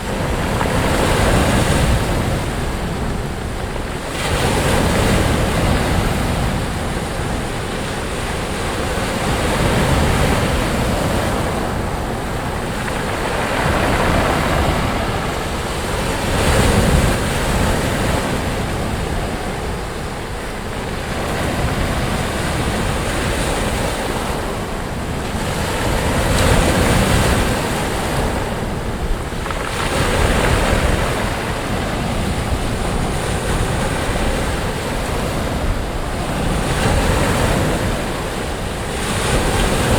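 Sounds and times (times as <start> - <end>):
ocean waves breaking on beach: 0.0 - 39.9
wind on microphone: 0.0 - 39.9.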